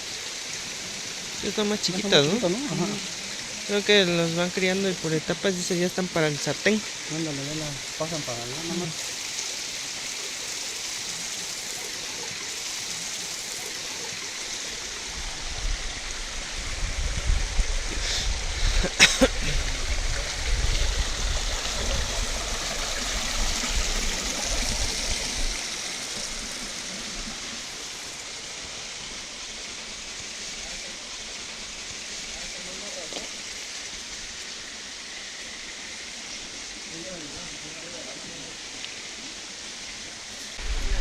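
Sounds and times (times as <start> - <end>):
water running: 0.0 - 41.0
low rumble: 40.6 - 41.0.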